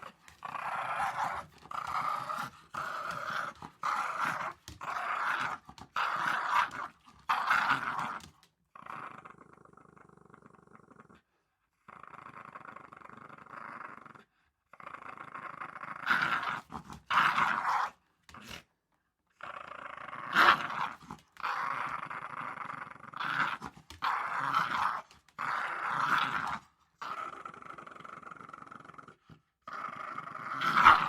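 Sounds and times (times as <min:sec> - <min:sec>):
small dog growling: 0:00.0 - 0:11.2, 0:19.4 - 0:31.0.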